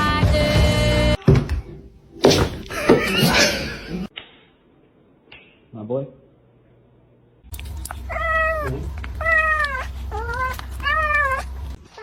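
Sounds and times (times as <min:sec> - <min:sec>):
cat meowing: 0:08.1 - 0:12.0.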